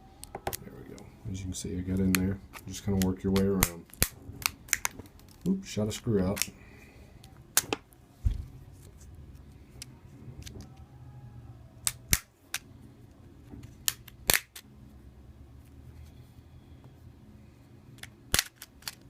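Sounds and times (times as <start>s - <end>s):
plastic clips snapping: 6.2s - 6.5s, 11.8s - 12.6s, 13.8s - 14.6s, 18.0s - 19.0s.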